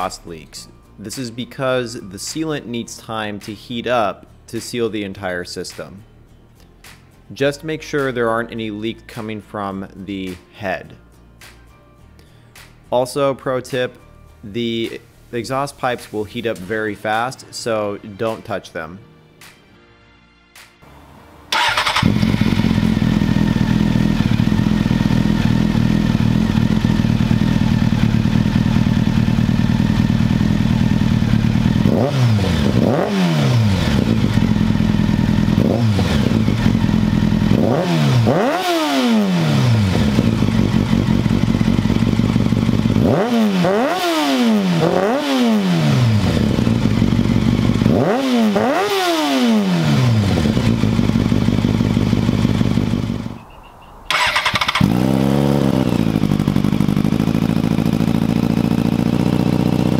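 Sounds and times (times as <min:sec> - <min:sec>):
motorcycle engine idling and revving: 0:21.0 - 0:59.9.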